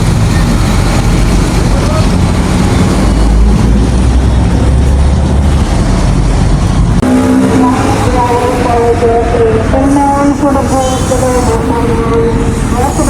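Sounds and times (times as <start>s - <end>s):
vehicle travel rumble: 0.0s - 13.0s
wind noise on microphone: 0.0s - 13.0s.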